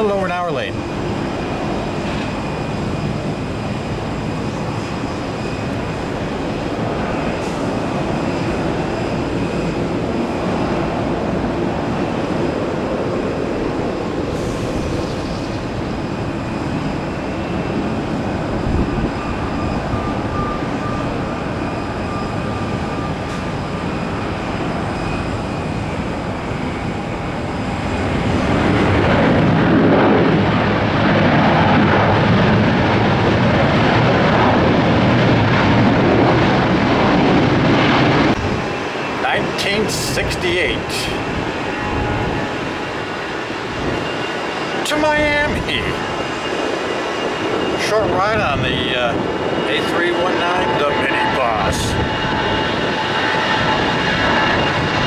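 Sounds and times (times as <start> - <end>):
jet airliner engines running: 0.0 - 55.0.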